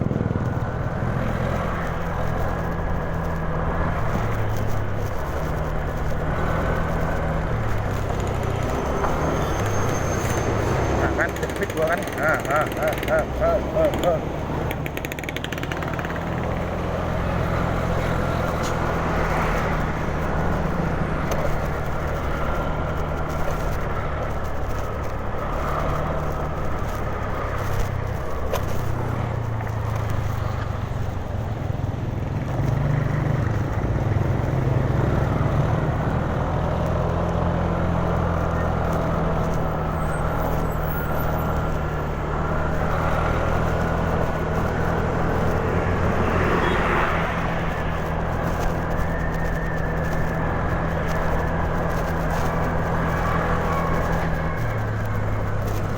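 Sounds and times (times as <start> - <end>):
scooter engine and road noise: 0.0 - 55.9.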